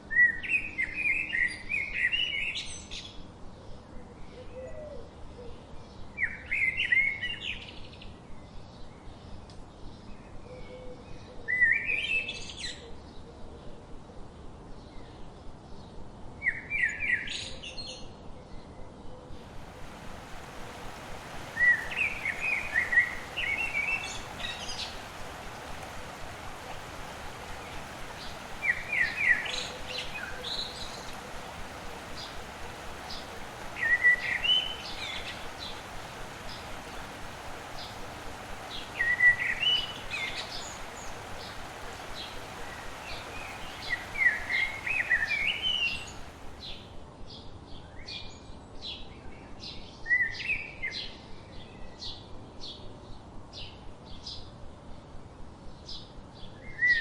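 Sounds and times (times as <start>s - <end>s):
steady background hiss: 19.3s - 47.5s
songbird warbling: 19.4s - 46.8s
thin bird chirps: 19.6s - 46.8s.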